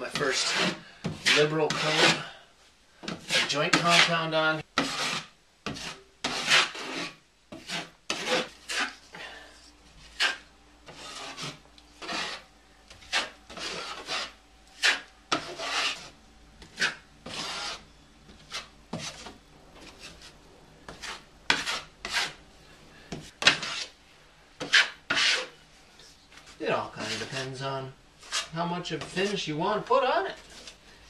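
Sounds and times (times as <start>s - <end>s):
taping knife scraping drywall: 0.1s - 2.3s, 3.0s - 4.2s, 4.8s - 9.2s, 10.0s - 22.4s, 23.2s - 24.0s, 24.6s - 25.6s, 28.2s - 29.4s.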